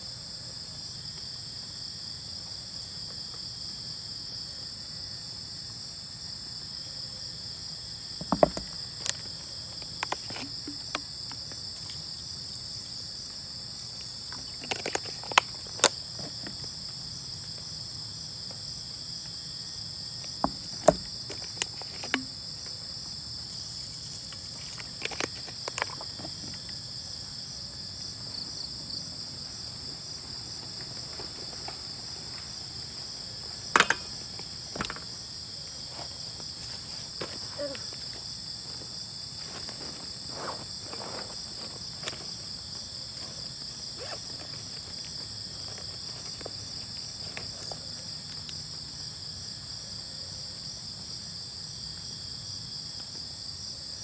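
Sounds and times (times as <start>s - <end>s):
crickets trilling: 0.0s - 54.0s
sharp clicks and knocks: 33.7s - 34.2s, 34.8s - 35.0s.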